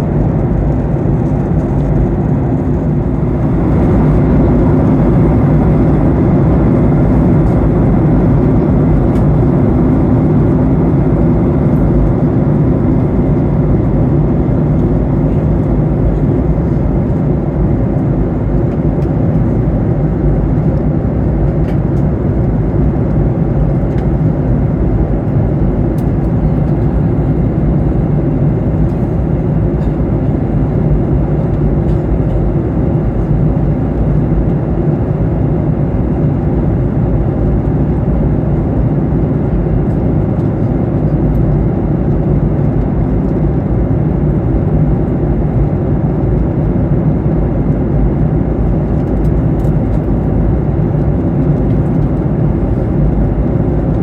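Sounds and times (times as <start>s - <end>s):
airplane cabin rumble: 0.0s - 54.0s.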